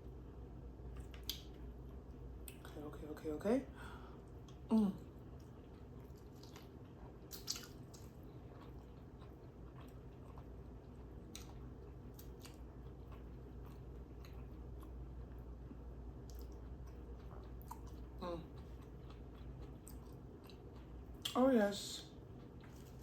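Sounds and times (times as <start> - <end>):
wet chewing: 4.3 - 21.4, 22.2 - 23.0.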